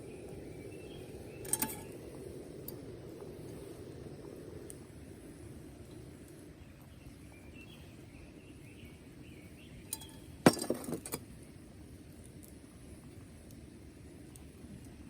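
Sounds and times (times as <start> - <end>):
faint bird chirps: 0.0 - 4.0, 4.6 - 10.4.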